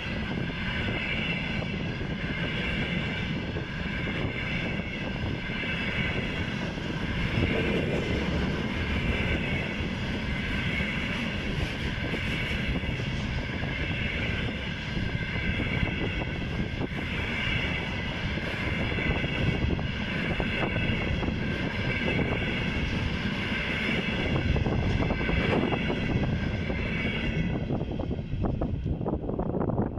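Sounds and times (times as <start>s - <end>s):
ringing hiss from wheels: 0.0s - 29.1s
train knocks: 0.0s - 29.1s
train wheels rumbling on rails: 0.0s - 29.9s.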